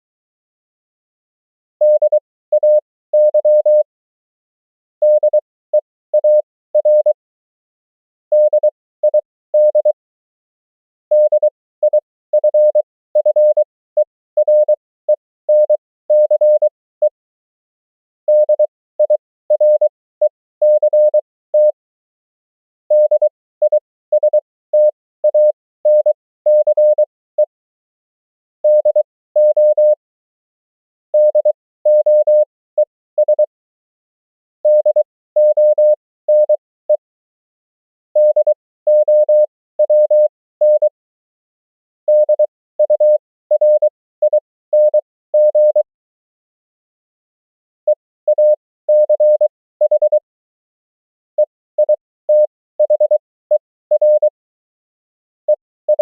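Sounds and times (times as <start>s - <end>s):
morse code tone: 31.2s - 32.5s, 34.7s - 36.6s, 38.2s - 41.0s, 42.1s - 45.8s, 47.9s - 50.2s, 51.4s - 54.3s.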